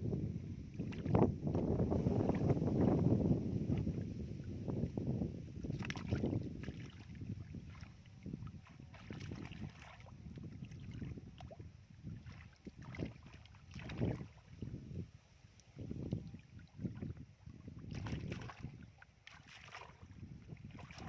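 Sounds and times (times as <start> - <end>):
muddy water sloshing and splashing: 0.7 - 15.0, 15.6 - 21.0
mud splats and clicks: 5.7 - 7.0.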